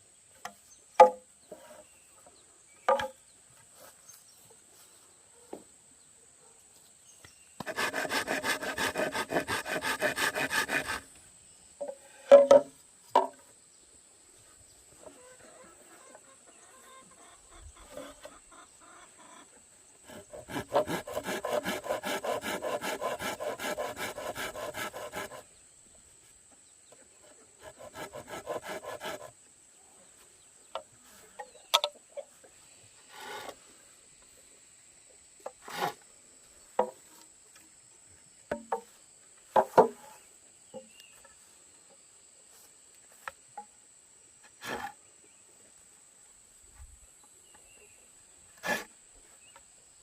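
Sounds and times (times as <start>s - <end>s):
rasping strokes on bamboo: 7.6s - 11.2s, 20.0s - 25.5s, 27.2s - 29.4s, 33.0s - 33.6s, 35.6s - 36.0s, 48.6s - 48.9s.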